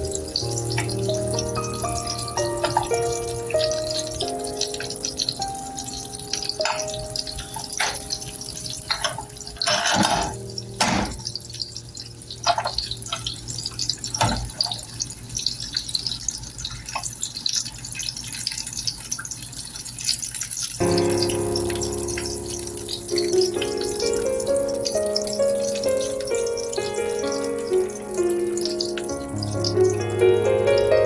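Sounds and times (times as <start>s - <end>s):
crackling spattering hiss: 0.0s - 31.0s
utensils knocking and clinking: 2.6s - 3.1s, 6.6s - 11.2s, 12.4s - 13.2s.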